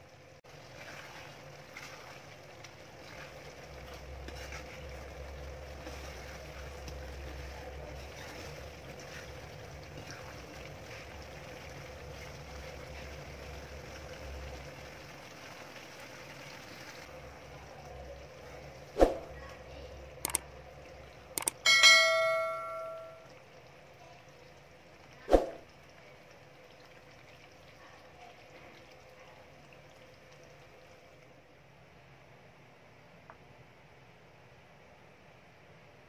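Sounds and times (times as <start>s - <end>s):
low hum: 21.4s - 23.3s
metal pot struck ringing: 21.5s - 23.3s.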